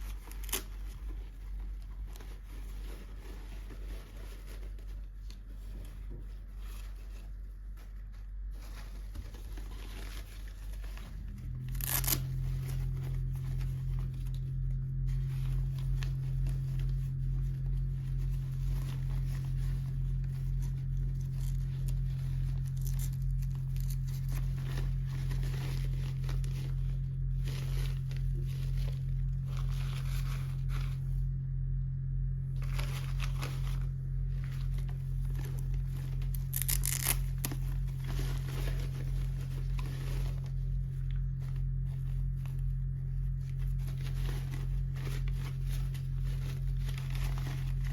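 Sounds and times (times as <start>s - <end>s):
packaging tearing and crinkling: 0.0s - 0.7s, 9.2s - 13.8s, 34.7s - 40.6s
steady low hum: 0.0s - 47.9s.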